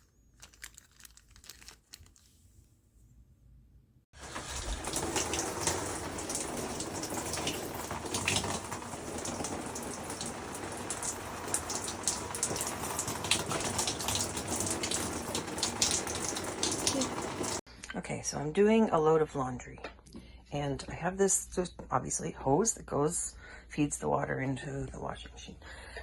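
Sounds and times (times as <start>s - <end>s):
small water splashes: 4.2s - 17.6s
water rushing: 4.2s - 17.6s.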